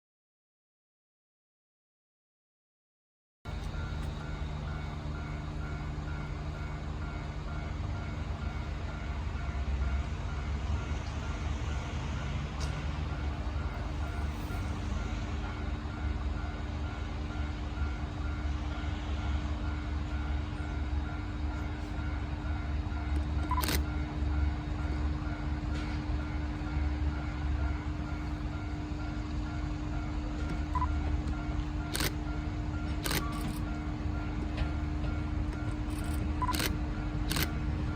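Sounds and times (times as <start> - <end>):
diesel railcar engine drone: 3.5 - 37.9
level crossing alarm beeping: 19.7 - 25.4, 26.2 - 37.9.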